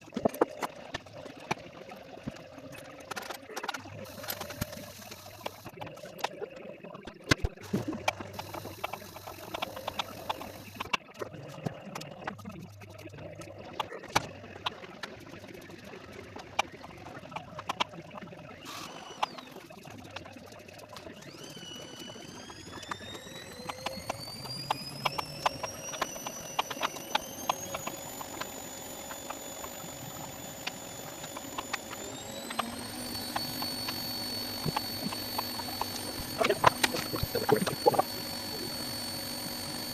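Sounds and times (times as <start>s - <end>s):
steady hum: 7.5s - 11.0s, 22.4s - 39.9s.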